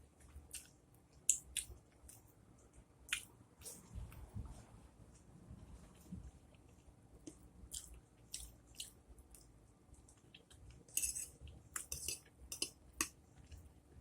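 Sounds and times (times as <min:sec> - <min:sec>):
chewing food: 0:06.0 - 0:13.7.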